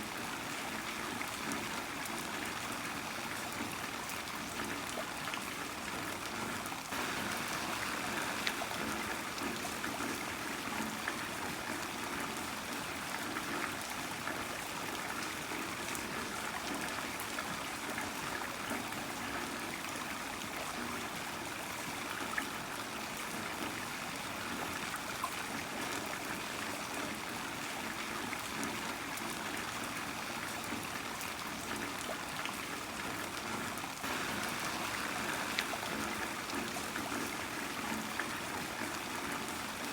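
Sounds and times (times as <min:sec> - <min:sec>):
heavy rain: 0:06.9 - 0:13.2, 0:34.0 - 0:39.9.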